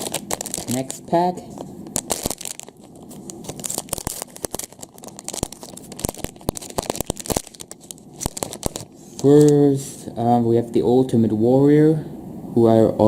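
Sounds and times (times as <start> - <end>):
plastic bag tearing and crinkling: 0.0 - 1.2, 1.8 - 8.9.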